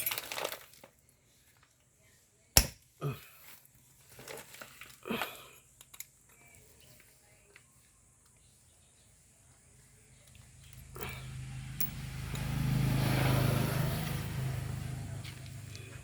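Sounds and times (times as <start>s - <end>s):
scraping and rustling handling: 0.0s - 2.4s, 3.3s - 8.8s.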